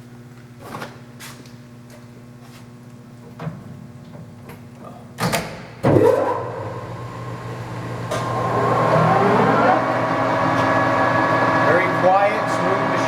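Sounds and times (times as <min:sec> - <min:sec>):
lathe headstock whine: 0:06.9 - 0:13.0.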